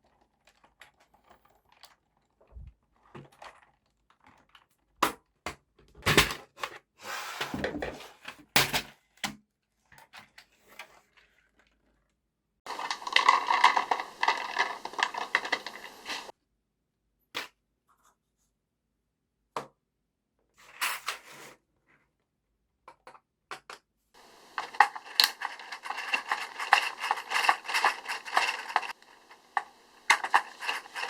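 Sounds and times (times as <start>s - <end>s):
steady rasping: 24.2s - 31.0s.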